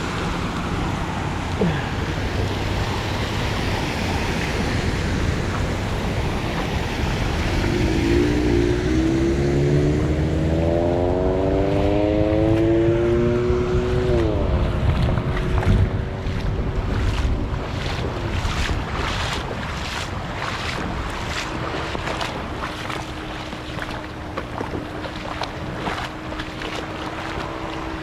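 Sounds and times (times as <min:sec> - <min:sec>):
steady rushing noise: 0:00.0 - 0:10.6, 0:11.2 - 0:28.0
vehicle engine: 0:00.0 - 0:28.0.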